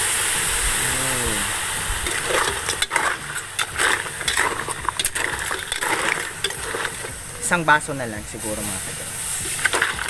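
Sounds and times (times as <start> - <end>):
pan hissing: 0.0 - 10.0
shell and utensil clicking on pan: 2.0 - 7.2, 9.4 - 10.0.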